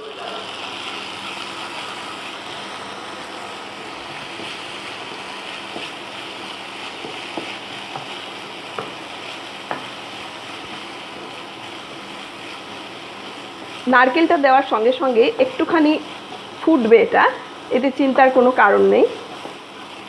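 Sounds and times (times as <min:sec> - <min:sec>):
onions sizzling in hot oil: 0:00.0 - 0:20.0.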